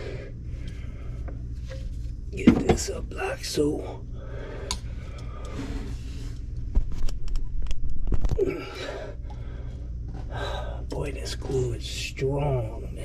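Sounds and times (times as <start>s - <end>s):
steady low hum: 0.0s - 13.0s
strained breath: 4.2s - 6.4s.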